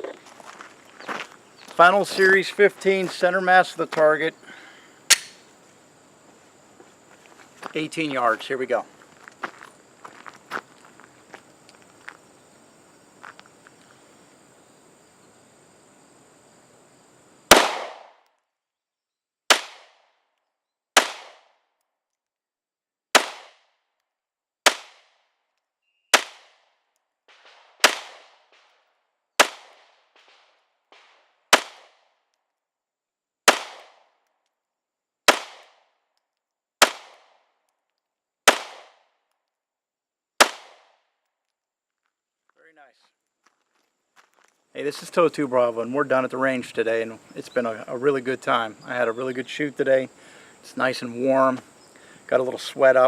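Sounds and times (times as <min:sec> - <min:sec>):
pistol single shots: 0:05.1 - 0:05.4, 0:17.5 - 0:18.2, 0:19.5 - 0:20.0, 0:21.0 - 0:21.5, 0:23.2 - 0:23.6, 0:27.3 - 0:28.7, 0:29.4 - 0:32.0, 0:33.5 - 0:34.0, 0:35.3 - 0:35.8, 0:36.8 - 0:37.3, 0:38.5 - 0:39.0, 0:40.4 - 0:40.9.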